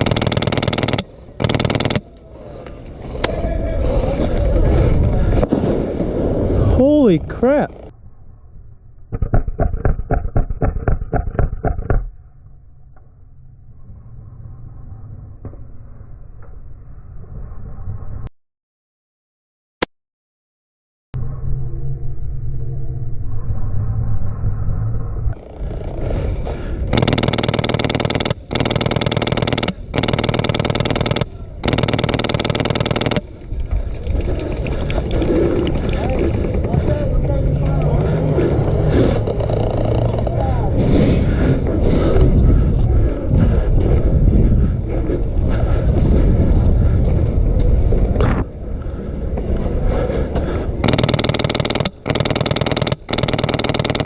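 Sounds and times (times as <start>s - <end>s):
airsoft machine gun firing: 0.0s - 2.1s, 26.9s - 33.4s, 50.8s - 54.0s
low rumbling: 21.2s - 50.8s.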